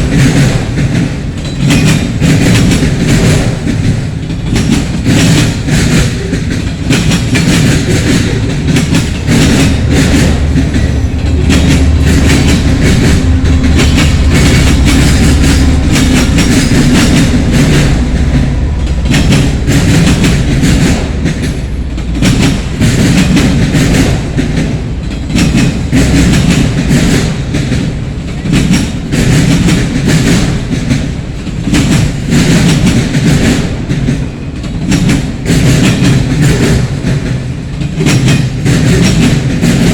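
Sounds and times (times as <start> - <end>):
train wheels clattering over rail joints: 0.0 - 39.9
heavy low rumble: 6.8 - 23.5.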